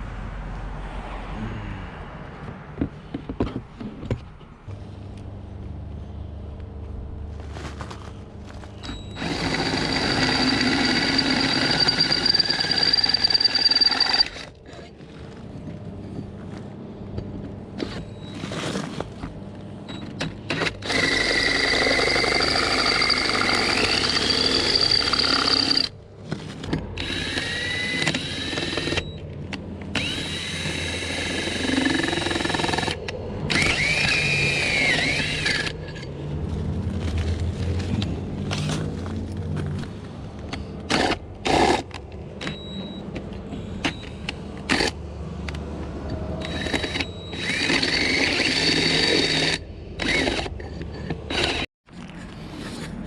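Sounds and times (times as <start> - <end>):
electric drill boring metal: 8.8 - 14.9, 20.5 - 26.0, 27.0 - 29.1, 29.9 - 36.1, 46.4 - 51.6.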